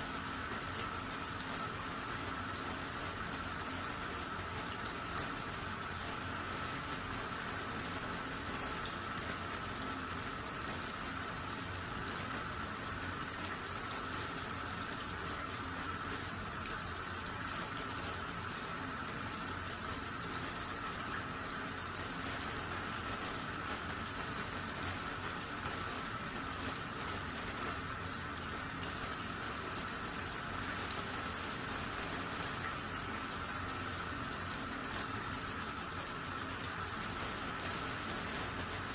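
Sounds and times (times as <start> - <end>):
water running with spatter: 0.0 - 38.9.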